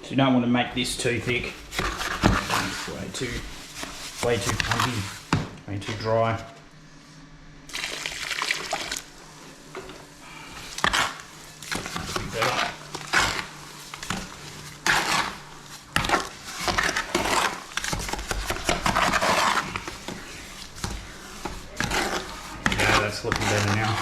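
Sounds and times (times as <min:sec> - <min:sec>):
tool scraping through mortar: 0:01.0 - 0:05.4, 0:10.5 - 0:24.0.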